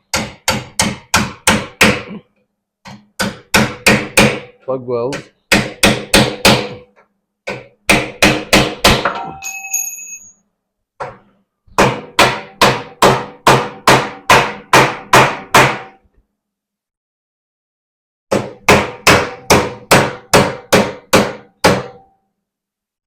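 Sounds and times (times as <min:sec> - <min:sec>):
hammer striking steel: 0:07.5 - 0:09.7.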